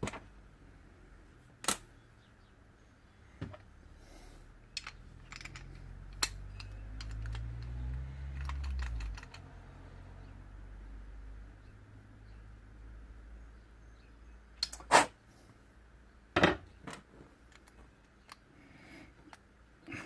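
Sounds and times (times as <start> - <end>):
small metal parts clicking: 4.7 - 9.5.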